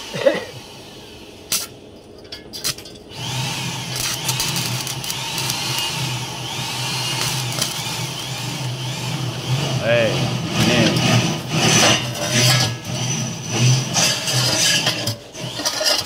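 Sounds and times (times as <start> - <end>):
power tool whining: 3.1 - 16.0
sharp metal clicks: 3.9 - 6.0.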